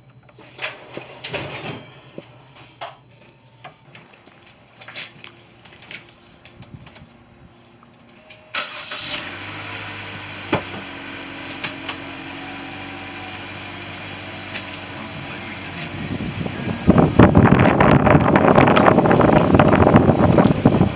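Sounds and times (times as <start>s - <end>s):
car engine starting and idling: 7.9s - 20.9s.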